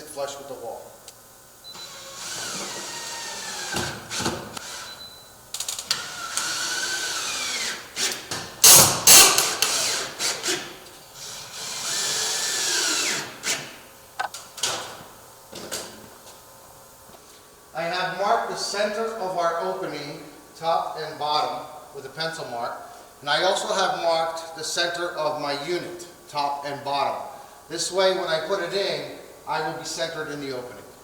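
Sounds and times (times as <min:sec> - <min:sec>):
power drill running: 0:01.6 - 0:05.1, 0:05.7 - 0:13.8.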